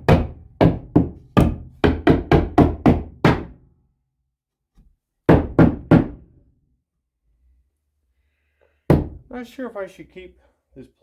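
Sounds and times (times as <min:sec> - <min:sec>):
hammer striking wood: 0:00.0 - 0:03.6, 0:05.3 - 0:06.2, 0:08.9 - 0:09.2.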